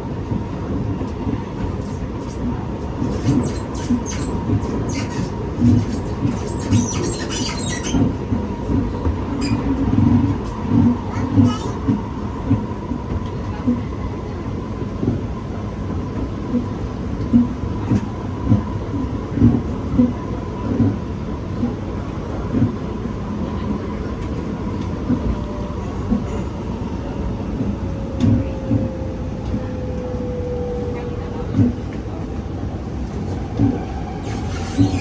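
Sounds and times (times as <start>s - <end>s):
metro train whine: 0.0s - 35.0s
train car creaking: 0.4s - 11.8s, 32.9s - 35.0s.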